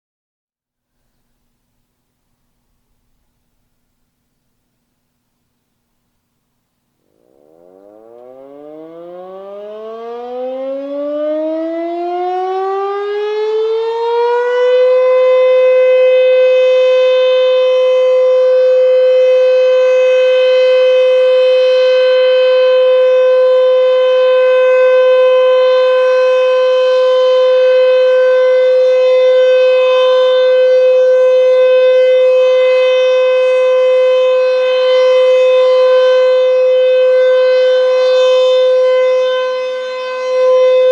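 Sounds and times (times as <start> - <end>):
warning siren winding up: 7.0 - 18.2.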